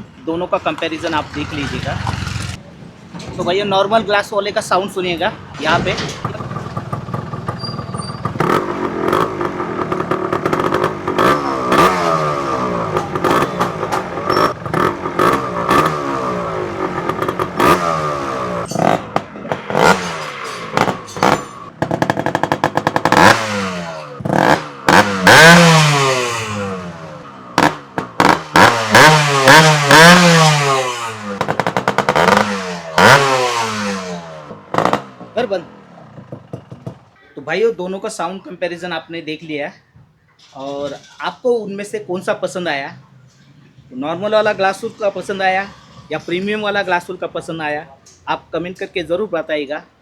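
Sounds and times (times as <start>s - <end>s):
two-stroke engine revving: 1.0s - 2.6s, 6.2s - 37.2s
exhaust pops and cracks: 18.7s - 23.6s, 27.6s - 30.4s, 31.3s - 33.4s, 34.5s - 35.4s.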